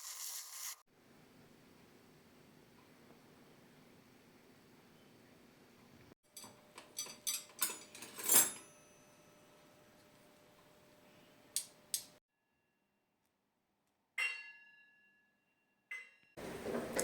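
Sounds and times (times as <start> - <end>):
dishes and cutlery clinking: 6.3 - 9.4.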